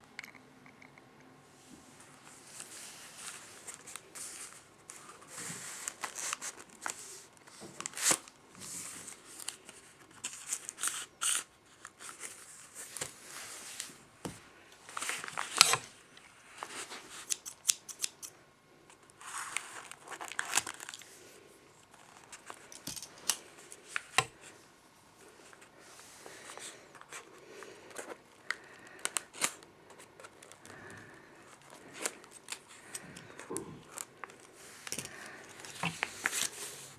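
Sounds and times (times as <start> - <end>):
paper rustling and crinkling: 2.1 - 14.0, 19.1 - 21.3, 25.5 - 36.9
scissors snipping paper: 17.1 - 18.3.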